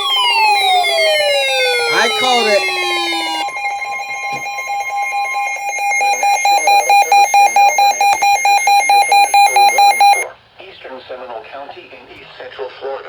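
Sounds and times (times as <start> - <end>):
weather radio alarm beeping: 0.0 - 10.3.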